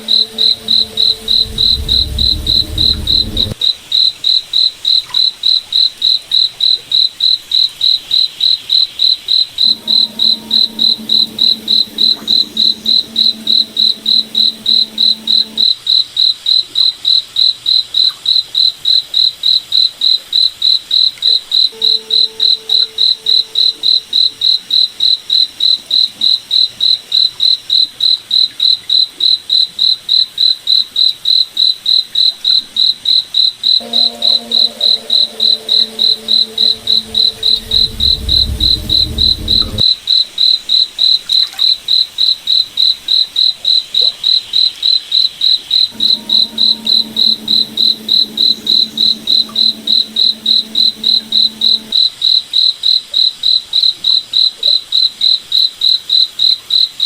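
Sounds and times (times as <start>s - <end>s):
cricket chirping: 0.0s - 3.6s, 6.3s - 15.8s, 18.6s - 39.9s, 41.9s - 52.1s
faint low tones: 0.0s - 3.6s, 9.6s - 15.6s, 33.8s - 39.8s, 45.9s - 52.0s.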